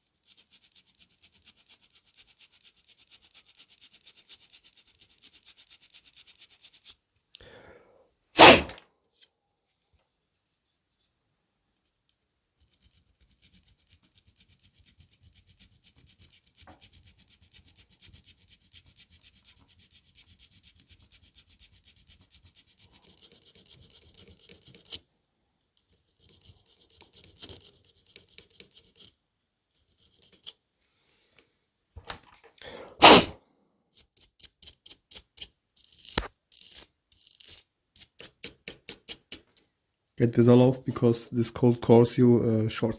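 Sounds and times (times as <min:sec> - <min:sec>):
rapid scratching in a port: 0:00.1 - 0:07.0, 0:12.6 - 0:25.0, 0:25.9 - 0:30.6.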